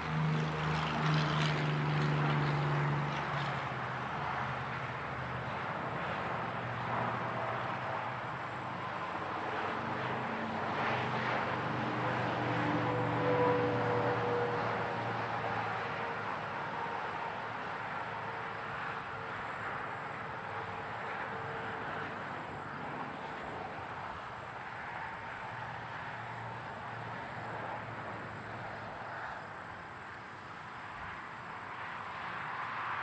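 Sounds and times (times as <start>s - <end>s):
highway traffic: 0.0s - 33.0s.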